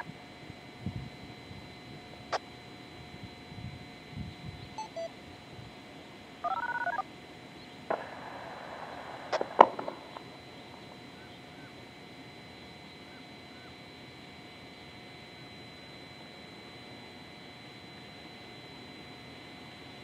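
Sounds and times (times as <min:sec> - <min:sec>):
paired beeping tones: 0:04.8 - 0:05.1, 0:06.5 - 0:07.0
radio hiss: 0:07.9 - 0:11.8.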